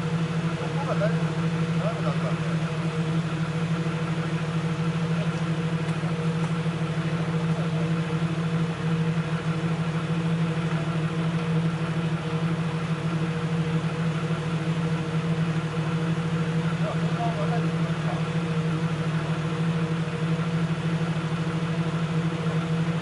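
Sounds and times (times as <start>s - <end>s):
vehicle engine idling: 0.0s - 23.0s.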